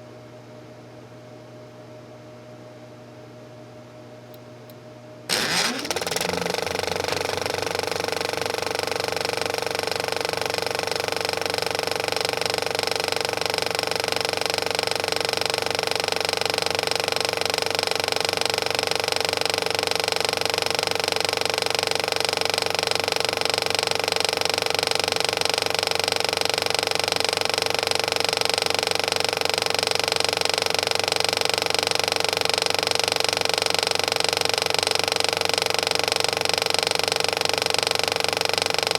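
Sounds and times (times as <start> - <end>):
film clattering through projector: 5.3 - 13.6
film projector motor whir: 5.3 - 38.9.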